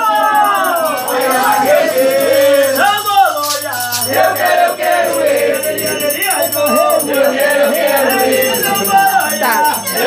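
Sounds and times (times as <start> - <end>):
shaken rattle beat: 0.0 - 10.0
voices singing a chant: 0.0 - 10.0.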